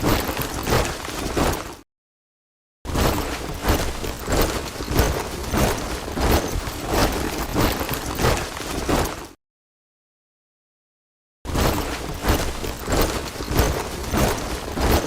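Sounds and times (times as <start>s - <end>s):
soldiers marching in step: 3.2s - 9.4s, 11.8s - 15.0s.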